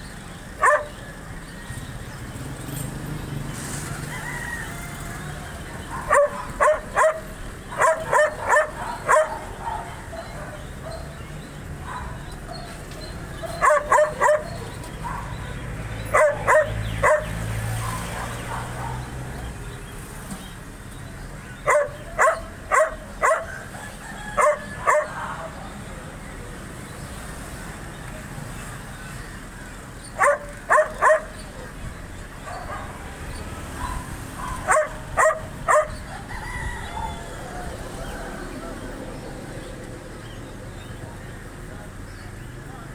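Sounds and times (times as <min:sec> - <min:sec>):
dog barking: 0:00.6 - 0:01.0, 0:05.8 - 0:11.2, 0:11.8 - 0:19.2, 0:21.6 - 0:25.7, 0:30.2 - 0:31.7, 0:32.4 - 0:38.7.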